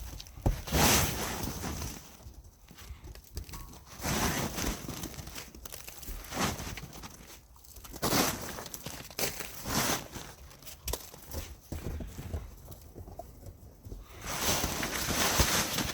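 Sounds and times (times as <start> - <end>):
snowy tent crinkling: 0.0 - 2.9, 3.5 - 13.0, 14.0 - 15.9.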